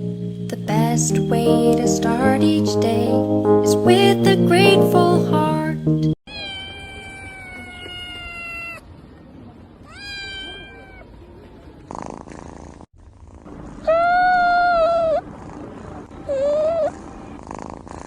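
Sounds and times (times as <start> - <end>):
cat meowing: 6.3 - 8.9, 9.8 - 11.2, 13.8 - 15.2, 16.2 - 17.1.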